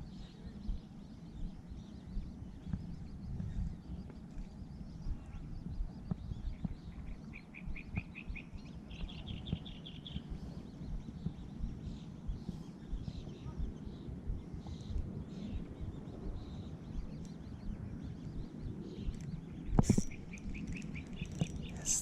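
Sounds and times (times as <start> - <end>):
songbird trills: 0.0 - 22.0.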